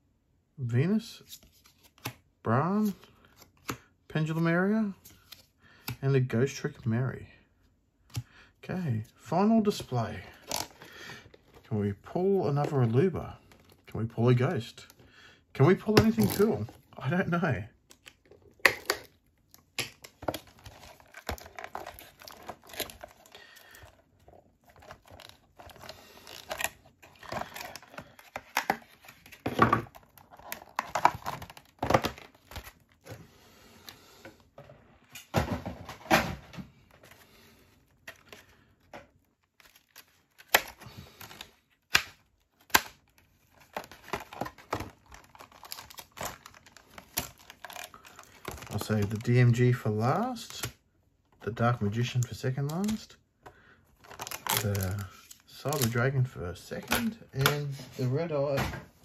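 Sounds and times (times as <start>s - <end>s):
plastic wrapping tearing and crinkling: 18.4s - 33.0s, 39.4s - 49.6s, 54.0s - 56.0s.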